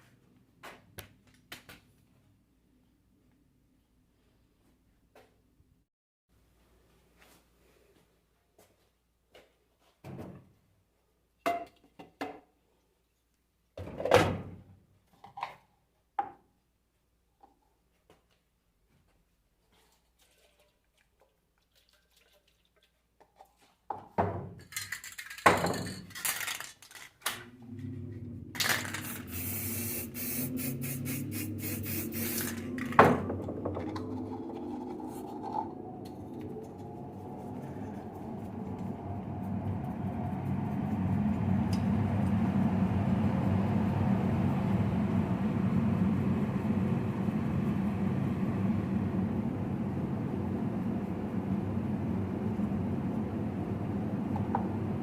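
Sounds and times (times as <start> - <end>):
steady rushing noise: 33.9 - 47.4.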